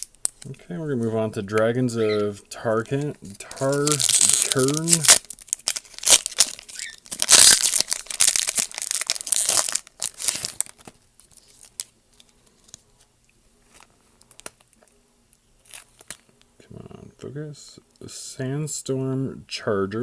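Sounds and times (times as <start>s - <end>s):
foil wrapper tearing and crinkling: 3.4s - 12.8s, 15.6s - 16.2s.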